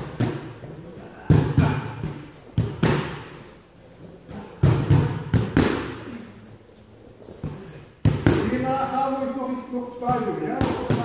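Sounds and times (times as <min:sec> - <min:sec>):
punches and kicks on training pads: 0:01.2 - 0:03.3, 0:04.6 - 0:06.0, 0:08.0 - 0:08.6, 0:10.5 - 0:11.0.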